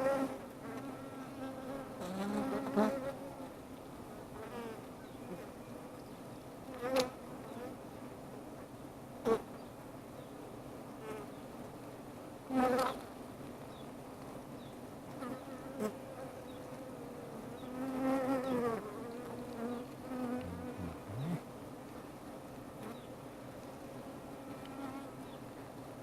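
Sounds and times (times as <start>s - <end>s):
hum of many bees: 0.0s - 3.6s, 4.2s - 8.0s, 14.6s - 21.8s, 22.8s - 25.4s
single bee flying close: 17.7s - 21.4s.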